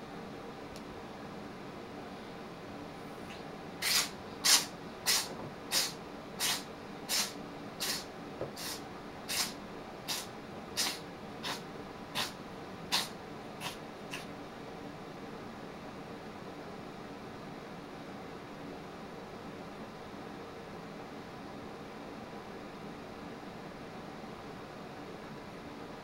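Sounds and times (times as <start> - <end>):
cat sneezing: 3.8 - 11.6, 12.2 - 14.3.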